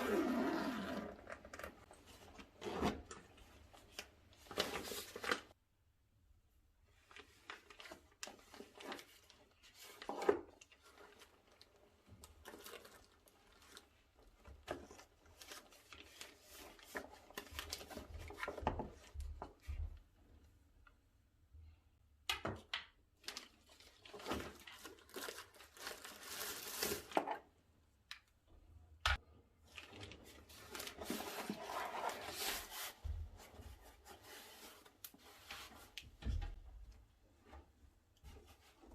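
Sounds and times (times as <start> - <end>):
packaging rustling and crinkling: 7.0 - 19.2, 23.2 - 27.5, 29.6 - 36.0.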